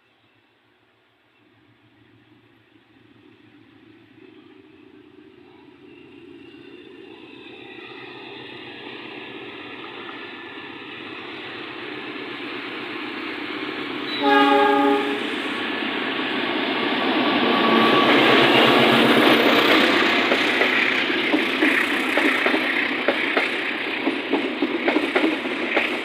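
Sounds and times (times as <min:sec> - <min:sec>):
diesel train approaching: 0:00.0 - 0:26.0
locomotive horn blast: 0:14.1 - 0:15.4.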